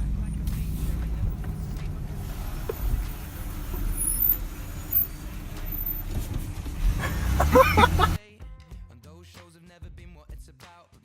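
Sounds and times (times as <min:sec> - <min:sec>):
car engine rumble: 0:00.0 - 0:08.2
road noise: 0:00.0 - 0:08.2.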